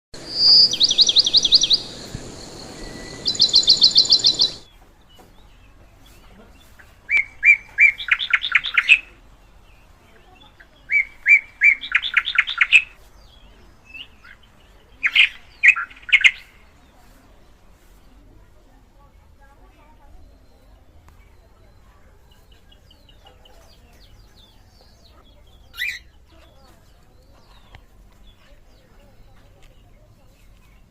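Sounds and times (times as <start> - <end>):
hiss: 0.2 - 4.6
rapid high trill: 0.2 - 4.6
cockatiel whistling: 0.2 - 4.7.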